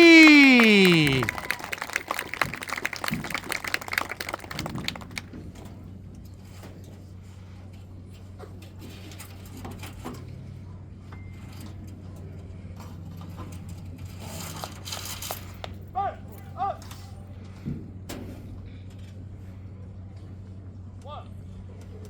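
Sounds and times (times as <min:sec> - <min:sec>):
crowd voices: 0:00.0 - 0:03.7.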